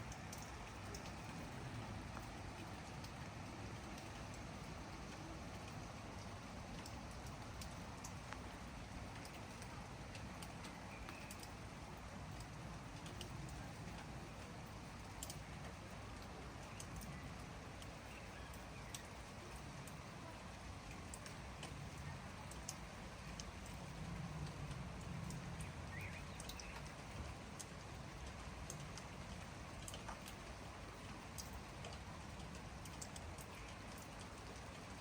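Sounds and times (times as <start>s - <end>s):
light rain: 0.0s - 35.0s
raindrop ticks: 0.0s - 35.0s
faint bird chirp: 10.2s - 11.6s, 16.4s - 20.4s, 25.2s - 27.0s, 33.4s - 34.1s.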